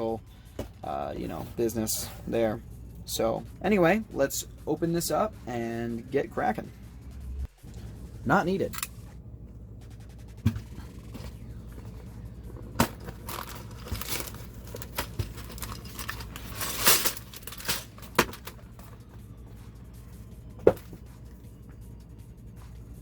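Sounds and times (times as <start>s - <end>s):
cardboard packaging crinkling and tearing: 12.6s - 18.1s.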